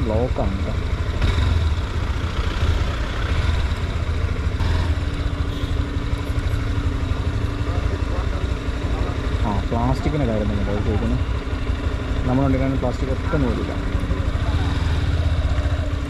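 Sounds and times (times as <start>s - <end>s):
motorcycle engine rumble: 0.0s - 16.0s.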